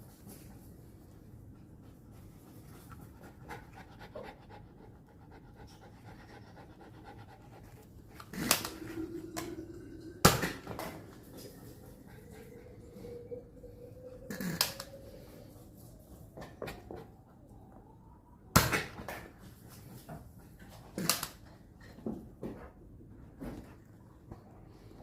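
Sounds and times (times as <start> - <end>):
dog panting: 1.7 - 9.1, 10.8 - 13.5.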